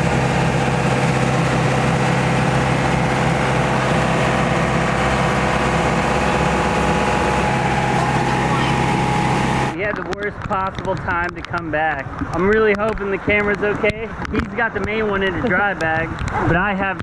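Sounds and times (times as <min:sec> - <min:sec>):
boat engine running: 0:00.0 - 0:09.8.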